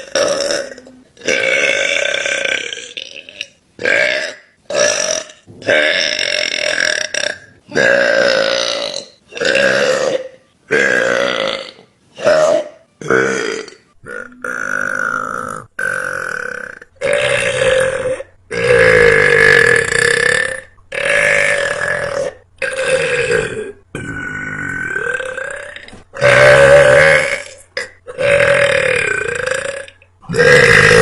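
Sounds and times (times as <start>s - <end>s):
girls burping: 13.0s - 31.0s.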